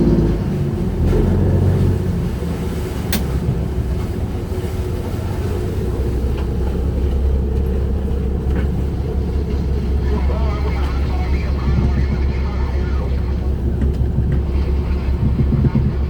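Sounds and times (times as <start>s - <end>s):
boat engine rumbling: 0.0s - 16.0s
sharp click: 3.1s - 3.3s.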